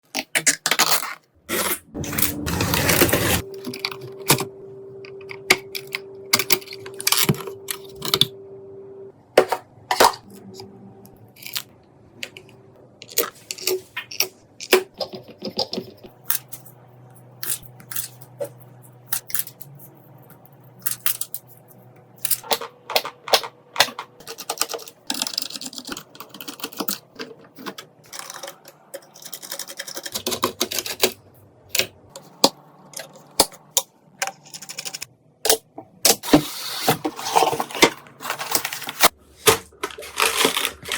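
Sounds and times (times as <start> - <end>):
packaging rustling: 36.3 - 40.9.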